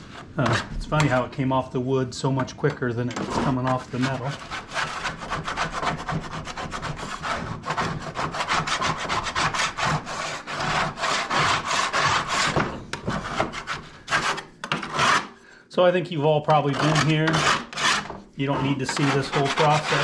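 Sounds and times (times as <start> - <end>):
scraping strokes on wood: 3.1 - 15.4, 16.5 - 20.0.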